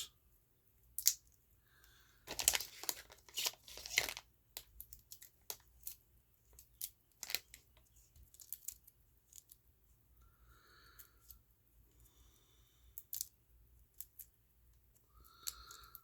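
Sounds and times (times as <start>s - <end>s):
putty tearing crinkly: 2.3s - 6.0s, 6.8s - 7.6s.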